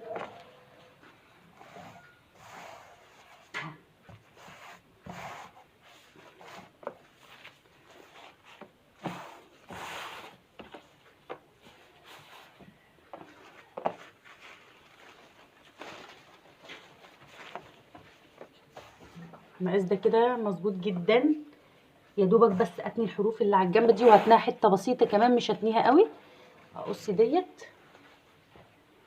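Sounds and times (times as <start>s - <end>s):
plastic sheet rustling: 13.3s - 19.3s.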